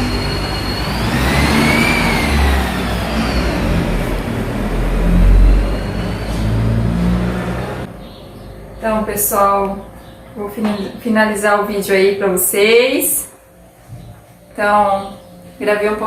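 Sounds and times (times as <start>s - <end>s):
motor whining: 0.0s - 8.1s
low rumble: 0.0s - 10.4s.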